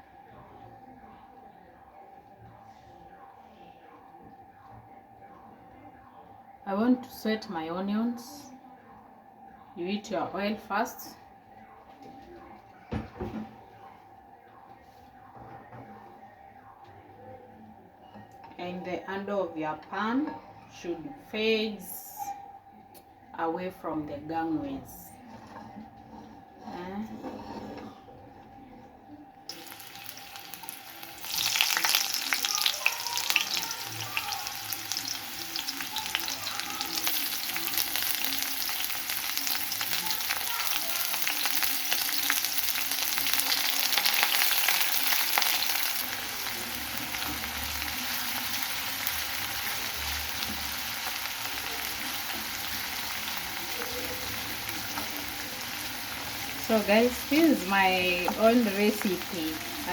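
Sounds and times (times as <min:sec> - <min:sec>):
food sizzling in hot oil: 0:29.5 - 0:59.9.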